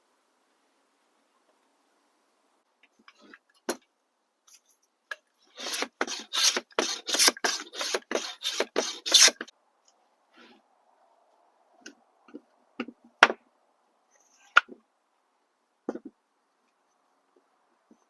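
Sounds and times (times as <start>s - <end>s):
hand plane scraping wood: 5.6s - 9.5s.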